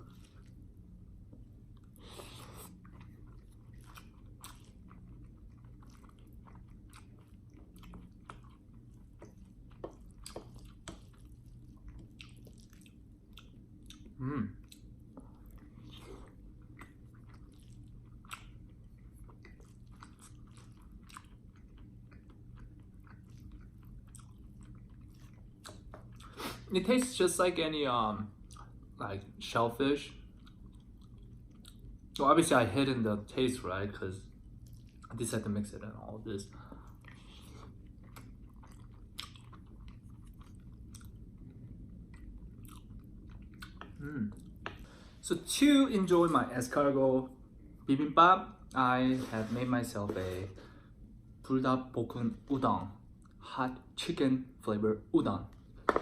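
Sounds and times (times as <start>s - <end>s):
person chewing with wet mouth clicks: 2.6s - 26.3s, 37.0s - 44.8s.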